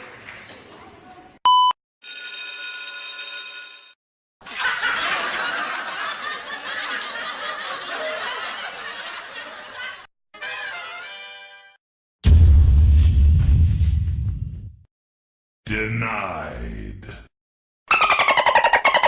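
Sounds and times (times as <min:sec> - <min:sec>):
crowd laughing: 0:04.4 - 0:11.0.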